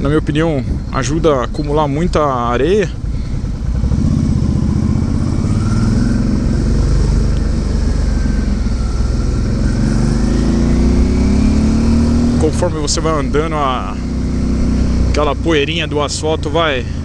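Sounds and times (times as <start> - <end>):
wind noise: 0.0 - 2.1
motorcycle engine running: 0.0 - 17.0.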